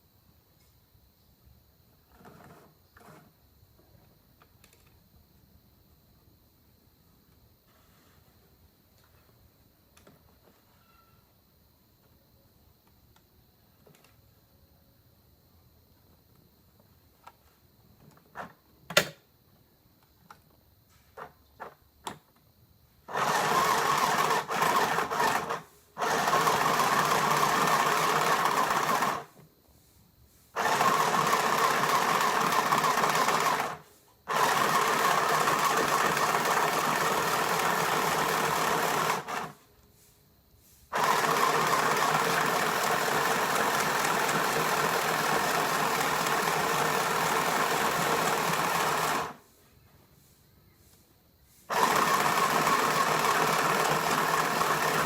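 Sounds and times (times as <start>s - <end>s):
sewing machine whirring: 23.1s - 29.4s, 30.5s - 39.6s, 40.9s - 49.4s, 51.7s - 55.0s.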